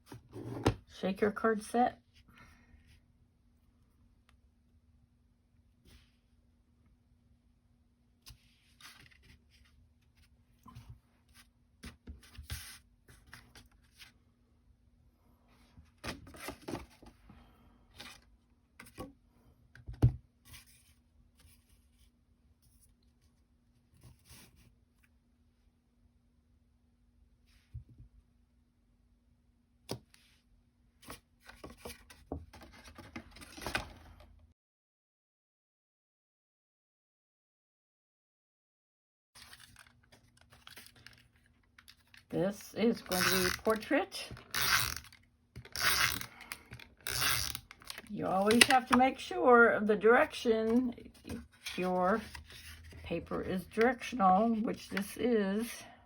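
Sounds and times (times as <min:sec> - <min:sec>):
paper rustling: 0:39.4 - 0:42.3, 0:50.6 - 0:54.2.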